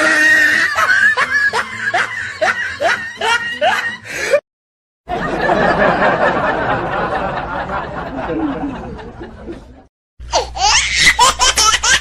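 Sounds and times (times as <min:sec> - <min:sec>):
person laughing: 0:00.2 - 0:04.4
several voices laughing: 0:00.6 - 0:04.0, 0:05.1 - 0:09.9.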